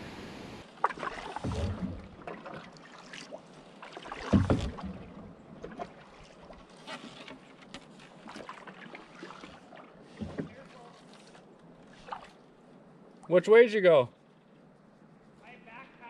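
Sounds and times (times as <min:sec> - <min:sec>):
paddle strokes splashing: 0:00.6 - 0:13.4
paddle knocking against hull: 0:00.8 - 0:03.0, 0:03.8 - 0:11.4.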